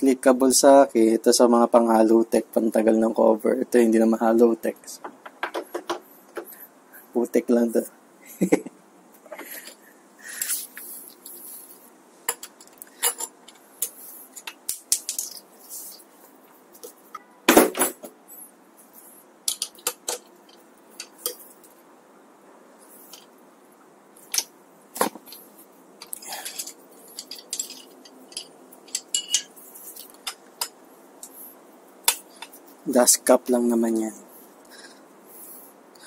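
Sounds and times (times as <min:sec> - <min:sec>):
metal hand tools clinking: 0:12.3 - 0:15.4, 0:26.0 - 0:30.8.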